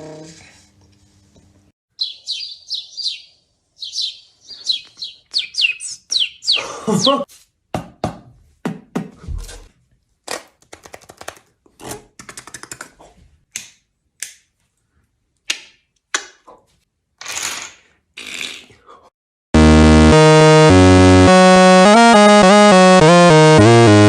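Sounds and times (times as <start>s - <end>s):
electronic music: 19.6s - 24.0s.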